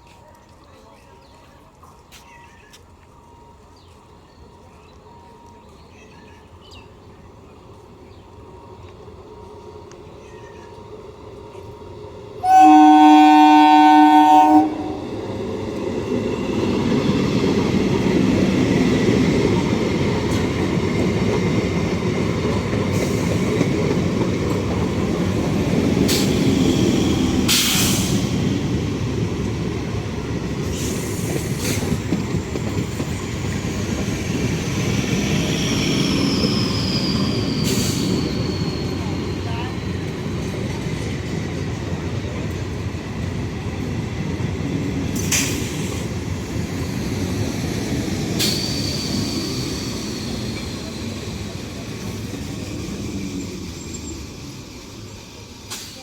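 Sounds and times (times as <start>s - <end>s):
train rumble: 0.0s - 56.0s
locomotive horn blast: 12.4s - 15.1s
wheels rumbling on rails: 13.2s - 56.0s.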